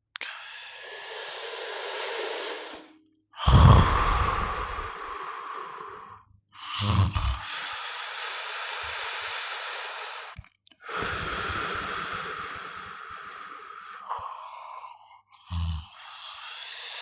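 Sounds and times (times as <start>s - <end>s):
person snoring: 0.3s - 17.0s.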